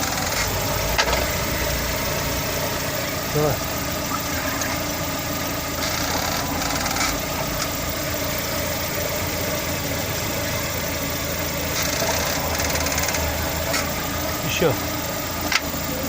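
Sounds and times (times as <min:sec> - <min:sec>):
clutch actuator squeaks and whirs: 0:00.0 - 0:01.6, 0:05.7 - 0:07.9, 0:11.6 - 0:14.1
car engine idling: 0:00.0 - 0:16.0.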